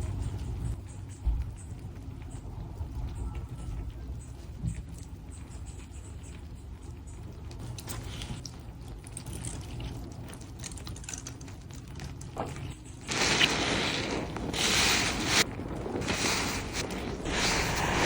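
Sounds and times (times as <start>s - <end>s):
wet sponge crackling and squelching: 13.0s - 18.0s
sponge squeezed with water gushing: 13.1s - 18.0s.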